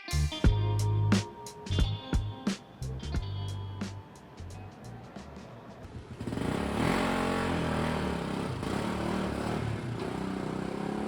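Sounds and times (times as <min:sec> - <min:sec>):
vehicle engine running: 0:04.4 - 0:11.0.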